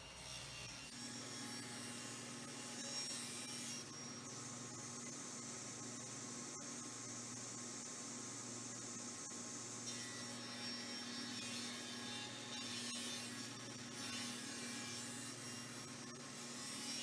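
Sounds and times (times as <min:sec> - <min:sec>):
power saw cutting wood: 0:09.9 - 0:17.0.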